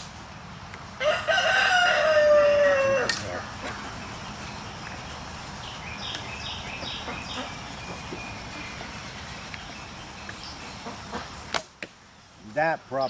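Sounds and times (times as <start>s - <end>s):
low outdoor rumble: 1.7s - 11.6s
bird chirping: 2.7s - 11.6s.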